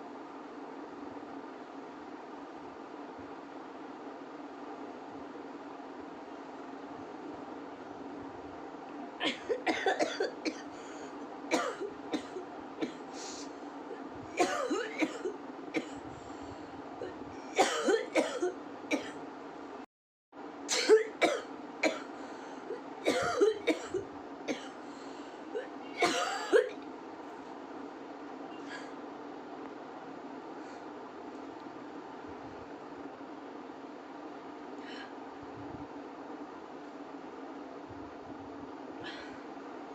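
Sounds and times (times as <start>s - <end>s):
background hum: 0.0s - 39.9s
woman coughing: 9.2s - 10.7s, 11.5s - 13.0s, 14.4s - 16.0s, 17.0s - 19.2s, 20.7s - 22.1s, 23.0s - 24.8s, 25.6s - 26.8s.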